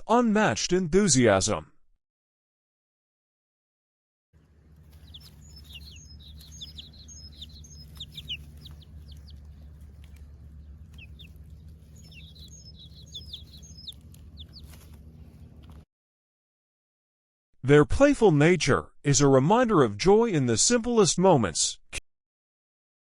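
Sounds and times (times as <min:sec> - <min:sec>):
birds chirping: 0:04.4 - 0:15.8
steady low hum: 0:04.4 - 0:15.8.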